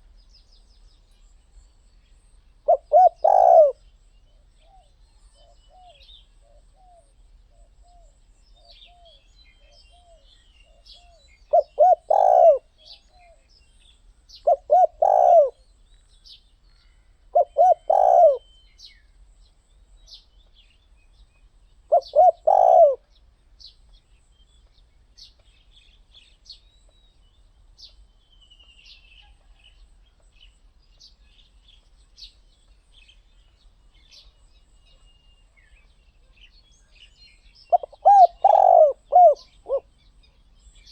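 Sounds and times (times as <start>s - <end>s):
small birds chirping faintly: 0.0s - 40.9s
dove cooing: 2.6s - 3.8s, 4.6s - 8.1s, 8.7s - 13.5s, 14.4s - 15.6s, 17.3s - 18.5s, 21.9s - 23.1s, 37.7s - 39.9s.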